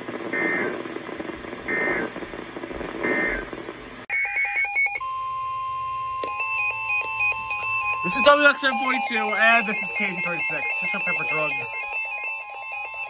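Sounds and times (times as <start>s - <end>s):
radio receiver hiss: 0.0s - 4.1s
stepping electronic beeps: 1.7s - 2.1s, 3.0s - 3.5s, 6.2s - 13.0s
steady high tone: 4.1s - 13.0s
data tone bursts: 6.2s - 13.0s.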